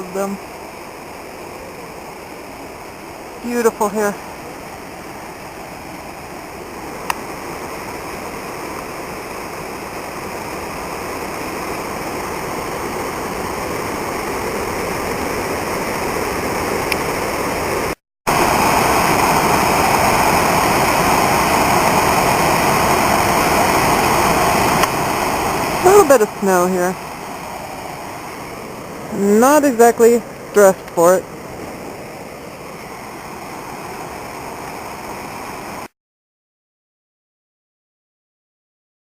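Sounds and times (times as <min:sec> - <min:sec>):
waterfall rushing: 0:00.0 - 0:35.9.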